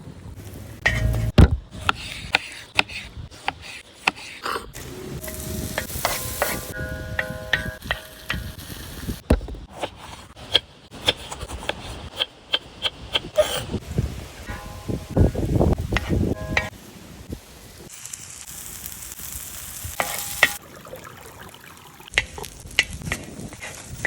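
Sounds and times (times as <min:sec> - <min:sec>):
utensil scraping a pan: 0:00.8 - 0:04.6
food sizzling: 0:04.8 - 0:09.3, 0:15.3 - 0:24.0.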